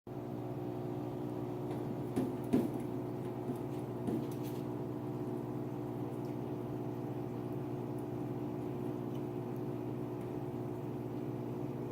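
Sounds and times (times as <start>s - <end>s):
low mechanical hum: 0.1s - 11.9s
soft knocks: 1.7s - 4.6s.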